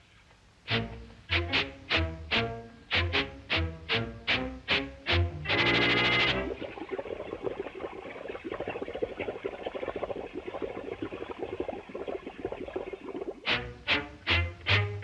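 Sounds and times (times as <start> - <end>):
cartoon crackling sound effect: 5.1 - 10.7.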